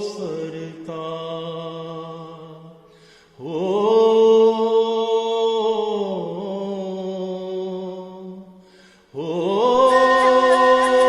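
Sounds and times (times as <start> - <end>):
person singing long notes: 9.2 - 11.0.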